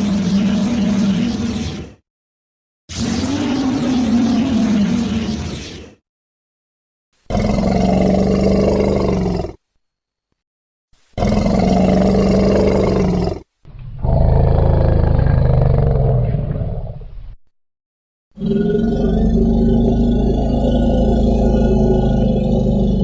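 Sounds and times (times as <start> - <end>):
dinosaur roars: 0.0 - 2.0, 2.9 - 5.6, 7.3 - 9.6, 11.2 - 17.1, 18.4 - 23.0.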